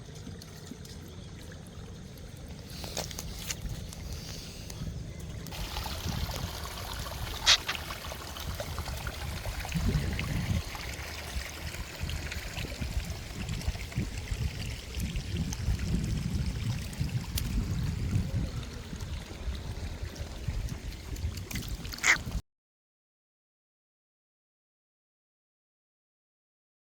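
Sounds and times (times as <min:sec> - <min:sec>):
water trickling and pouring: 0:00.0 - 0:22.4.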